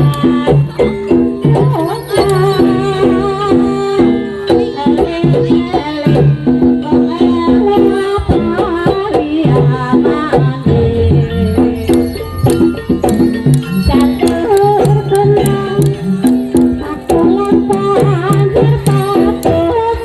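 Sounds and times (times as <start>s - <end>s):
drums and rattling percussion: 0.0s - 20.0s
metallophone notes: 0.0s - 20.0s
wavering melody line: 9.8s - 19.8s.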